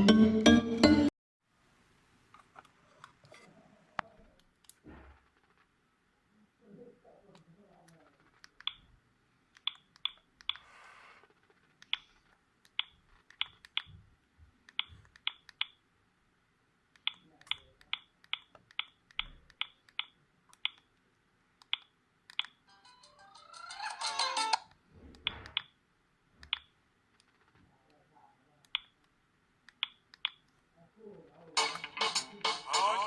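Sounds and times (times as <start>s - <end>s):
phone ringtone: 22.7s - 24.6s, 31.6s - 33.0s.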